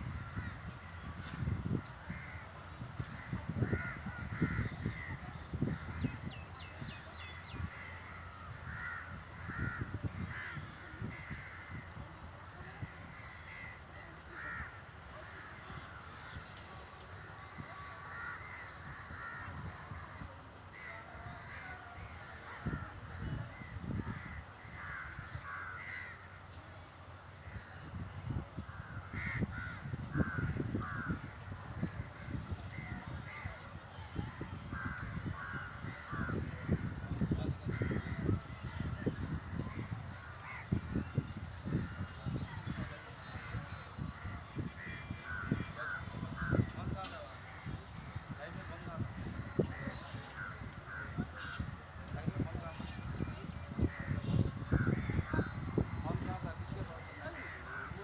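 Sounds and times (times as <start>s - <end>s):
birds calling harshly: 3.2s - 11.8s.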